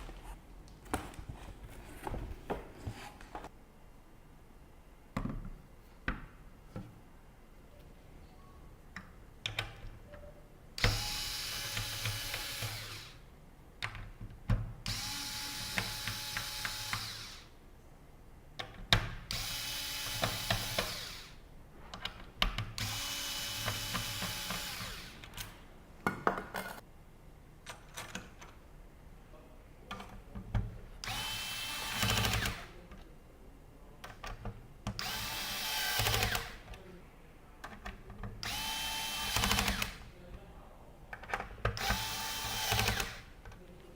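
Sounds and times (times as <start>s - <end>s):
electric screwdriver driving screws: 10.8s - 13.2s, 14.9s - 17.4s, 19.4s - 21.4s, 22.8s - 25.2s, 35.0s - 36.6s, 38.4s - 40.0s, 41.8s - 43.2s.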